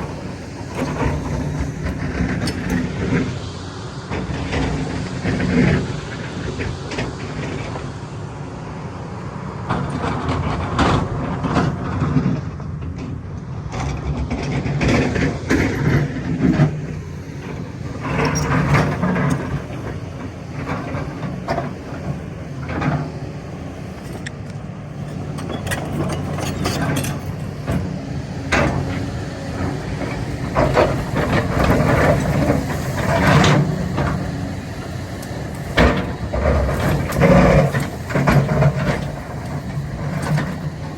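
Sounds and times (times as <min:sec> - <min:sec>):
excavator diesel engine: 0:00.0 - 0:40.9
clanks and knocks: 0:09.7 - 0:40.9.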